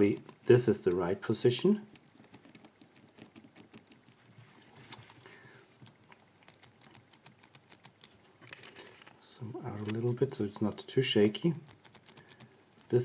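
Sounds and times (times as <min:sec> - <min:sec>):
padlock wheels clicking: 0:11.7 - 0:12.9.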